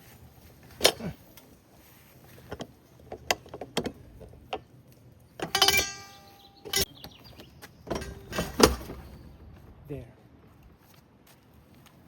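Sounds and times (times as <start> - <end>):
ringing metallic clink: 5.4 - 6.9
metal gate latch clicking: 5.4 - 7.0, 7.9 - 9.1.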